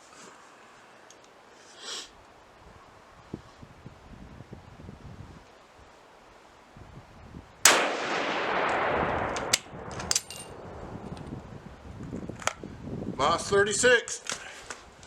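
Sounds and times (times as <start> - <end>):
rifle shot: 7.6 - 11.2.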